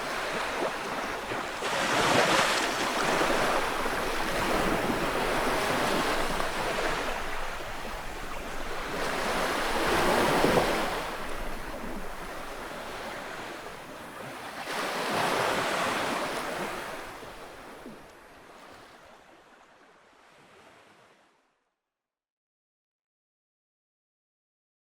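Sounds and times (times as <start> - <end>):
ocean waves washing onto shore: 0.0 - 19.4.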